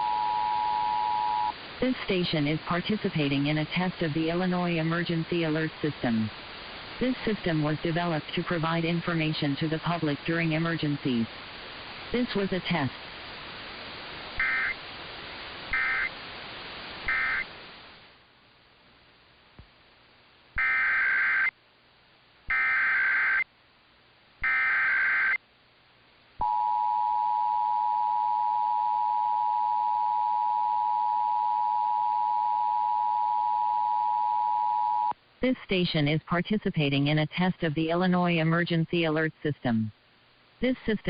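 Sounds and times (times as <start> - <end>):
screechy data bursts: 14.4 - 14.8, 15.7 - 16.1, 17.1 - 17.5, 20.6 - 21.5, 22.5 - 23.5, 24.4 - 25.4.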